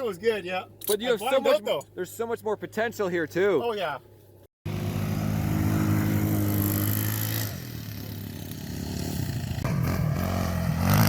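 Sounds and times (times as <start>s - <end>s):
engine running steadily: 4.1s - 10.8s
engine revving: 4.6s - 11.0s.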